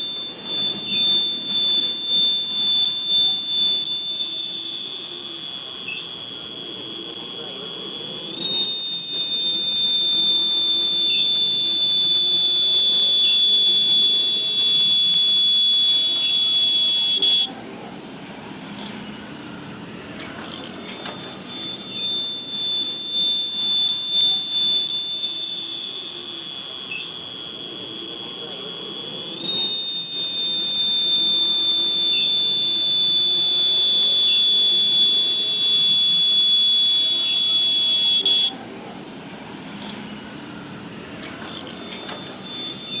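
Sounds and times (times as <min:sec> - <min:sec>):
cicada buzzing drone: 0:00.0 - 0:17.5, 0:20.5 - 0:38.6, 0:41.5 - 0:43.0.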